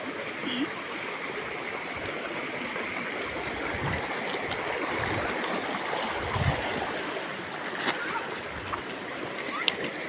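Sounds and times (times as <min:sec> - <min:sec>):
water flowing over rocks: 0:00.0 - 0:10.0.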